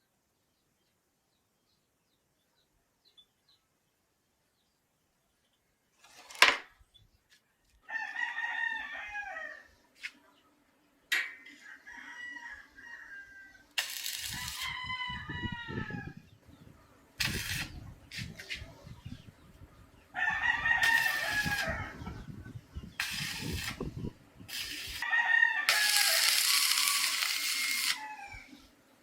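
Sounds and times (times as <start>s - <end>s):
roosters crowing: 7.8s - 9.8s, 11.3s - 16.3s, 19.9s - 28.9s
noise bursts: 13.8s - 19.7s.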